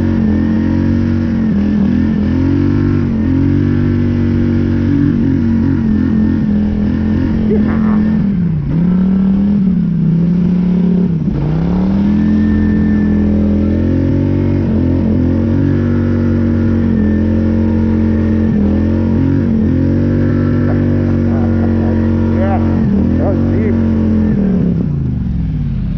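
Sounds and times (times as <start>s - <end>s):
atv engine revving: 0.0s - 25.9s.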